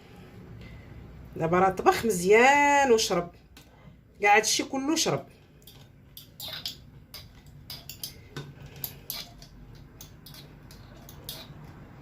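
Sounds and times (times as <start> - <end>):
utensils clinking on a strainer: 5.6 - 11.8.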